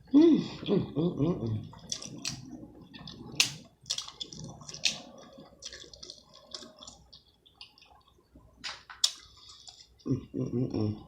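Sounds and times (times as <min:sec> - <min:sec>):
shellfish being eaten: 0:01.6 - 0:08.2, 0:08.9 - 0:10.1
wet squishy crab legs cracking: 0:01.8 - 0:08.0, 0:08.7 - 0:10.0.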